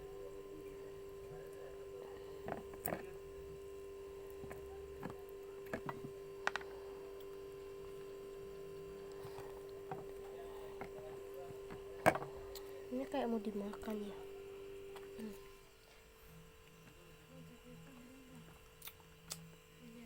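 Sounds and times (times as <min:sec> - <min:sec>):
steady electrical hum: 0:00.0 - 0:20.0.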